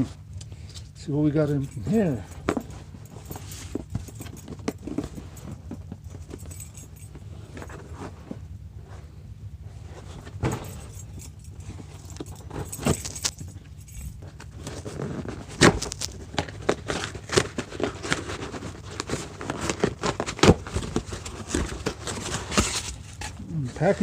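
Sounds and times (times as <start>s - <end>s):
low hum: 0.0s - 19.7s
packing material rustling: 11.6s - 24.0s.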